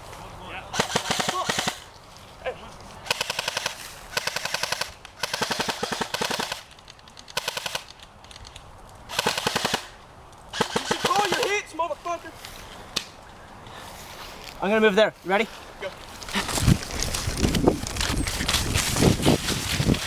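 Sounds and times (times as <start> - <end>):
airsoft guns firing bursts: 0.7 - 1.9, 3.0 - 6.7, 7.3 - 7.9, 9.1 - 9.9, 10.5 - 11.6.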